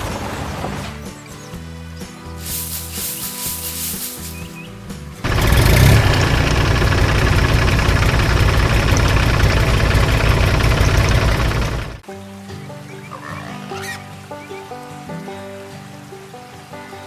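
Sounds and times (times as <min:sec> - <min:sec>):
combine harvester engine running: 0:05.2 - 0:12.0.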